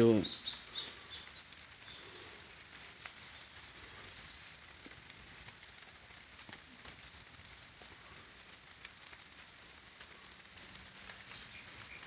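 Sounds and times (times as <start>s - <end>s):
light taps of rain: 0.0s - 12.0s
soft steady hiss: 0.0s - 12.0s
bird high-pitched short calls: 10.6s - 12.0s.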